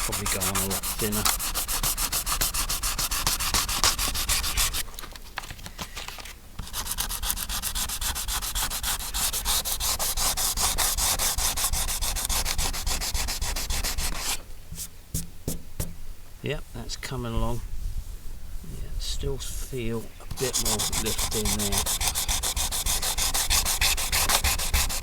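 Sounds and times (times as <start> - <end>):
sandpaper rubbing on metal: 0.0 - 4.8, 6.6 - 14.4, 19.6 - 25.0.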